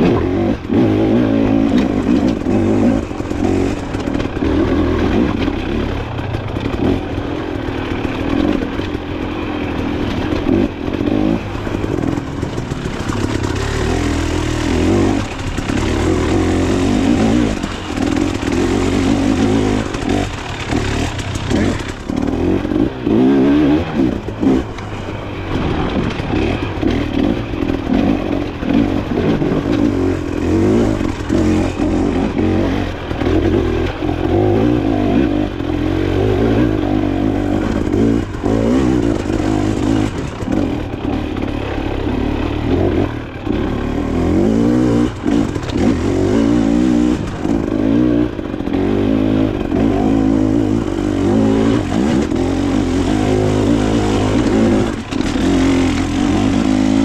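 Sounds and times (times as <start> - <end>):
knocks and clatter: 0.0 - 23.3, 24.0 - 42.0
dirt bike engine revving: 0.0 - 57.0.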